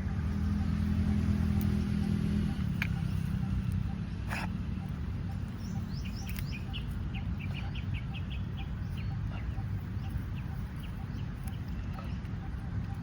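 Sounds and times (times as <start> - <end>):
steady low rumble: 0.0 - 13.0
bird chirping: 4.8 - 13.0.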